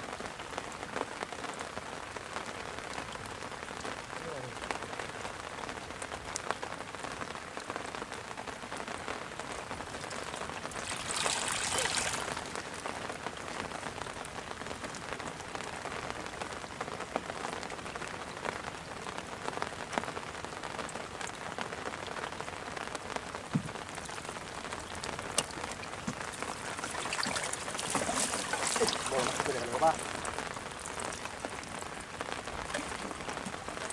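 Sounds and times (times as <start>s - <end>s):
rain falling on water: 0.0s - 33.9s
rushing water splash: 9.4s - 14.0s, 23.4s - 33.9s
small drip ticks: 23.6s - 33.9s.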